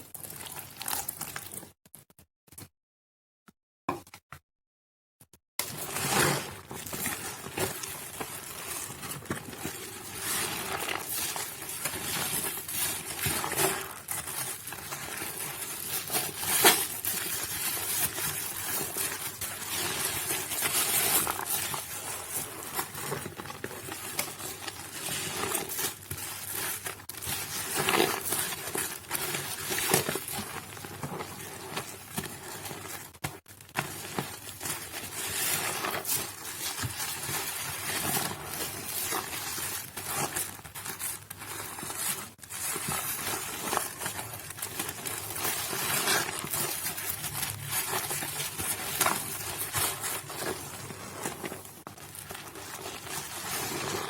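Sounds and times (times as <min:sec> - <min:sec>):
wet soap crackling and squishing: 0:00.0 - 0:02.1, 0:05.6 - 0:54.0.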